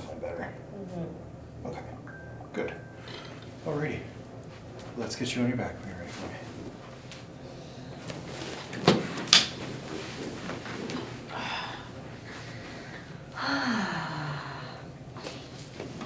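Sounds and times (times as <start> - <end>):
rustling on padded table: 6.1 - 11.3.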